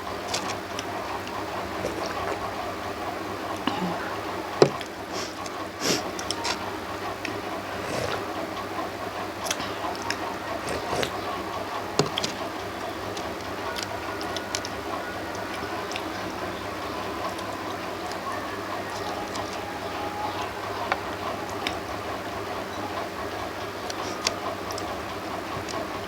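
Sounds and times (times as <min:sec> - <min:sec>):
steady background noise: 0:00.0 - 0:26.0
person chewing: 0:00.3 - 0:03.0, 0:07.4 - 0:08.4, 0:09.4 - 0:11.3, 0:12.0 - 0:12.4.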